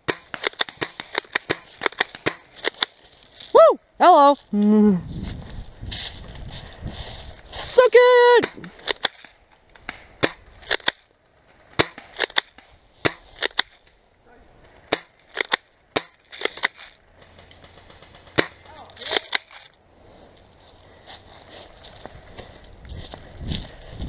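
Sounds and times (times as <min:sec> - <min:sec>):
airsoft guns firing: 0:00.0 - 0:02.9, 0:11.6 - 0:13.8, 0:14.9 - 0:19.6.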